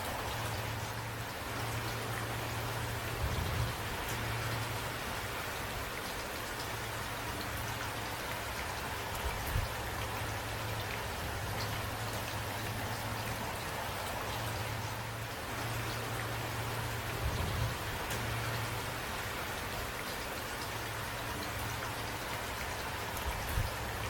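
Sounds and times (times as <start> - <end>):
rain falling: 0.0 - 24.0.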